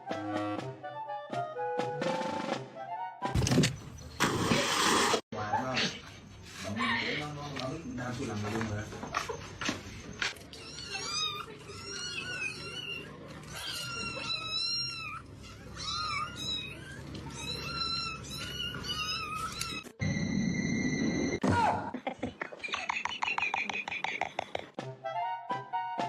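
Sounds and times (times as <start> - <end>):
cats meowing: 10.4 - 20.0.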